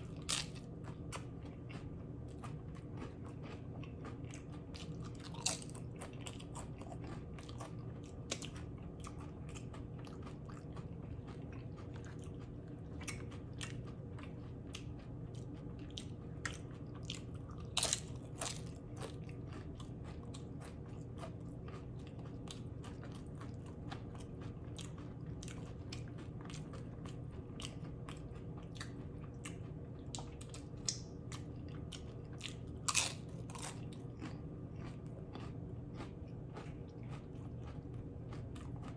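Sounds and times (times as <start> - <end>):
chewing and crunching chips: 0.0 - 38.9.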